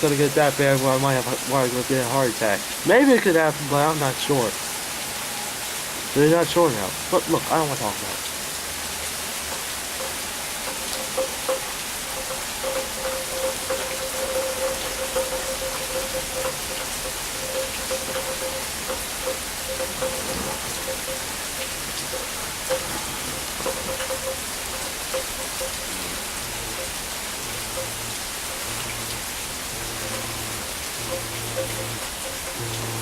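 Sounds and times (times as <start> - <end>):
heavy rain falling: 0.0 - 33.0
raindrops ticking: 0.0 - 33.0.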